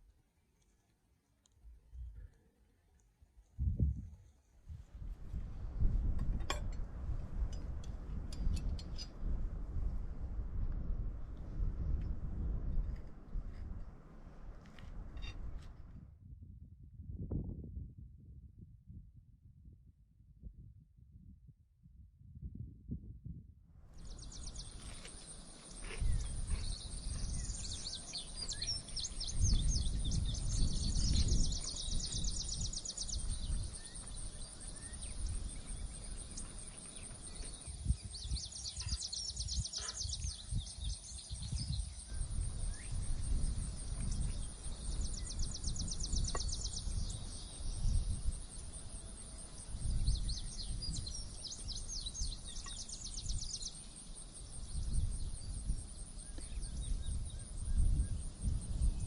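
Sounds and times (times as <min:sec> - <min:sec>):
songbirds trilling: 0:24.0 - 0:59.0.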